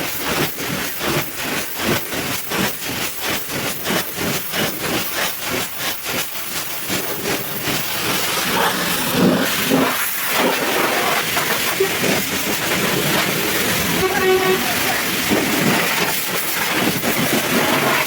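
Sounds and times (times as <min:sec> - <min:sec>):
pressure washer jet hissing: 0:05.7 - 0:18.0.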